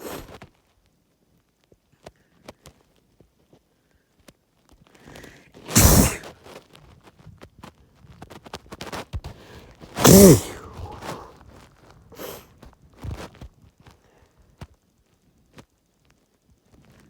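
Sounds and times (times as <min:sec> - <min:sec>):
soft breath: 0:05.0 - 0:06.2, 0:09.4 - 0:11.4
person sneezing: 0:05.7 - 0:06.2, 0:10.0 - 0:11.3, 0:12.2 - 0:12.4.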